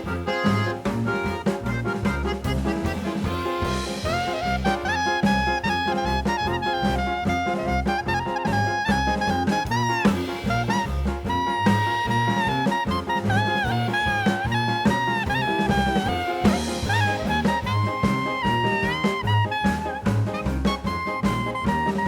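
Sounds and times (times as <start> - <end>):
swing jazz with brass lead: 0.0 - 22.0.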